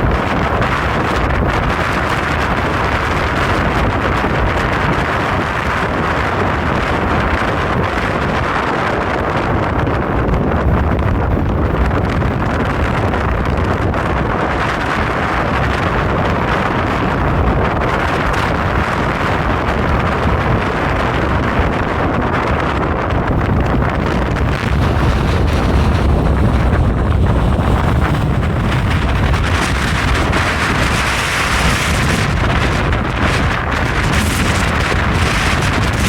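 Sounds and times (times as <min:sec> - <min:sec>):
strong wind buffeting microphone: 0:00.0 - 0:36.0.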